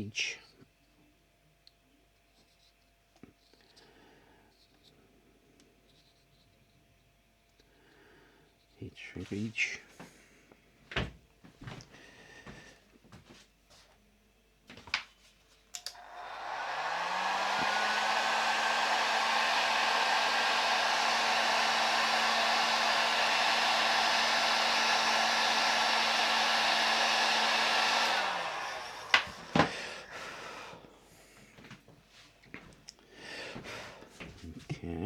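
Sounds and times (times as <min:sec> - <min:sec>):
hot-air blower running: 0:15.8 - 0:31.8, 0:33.3 - 0:34.4.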